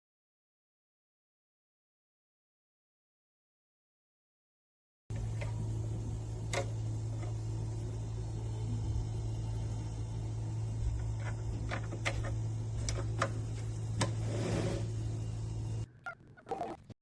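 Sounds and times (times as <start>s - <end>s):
steady low hum: 5.1s - 17.0s.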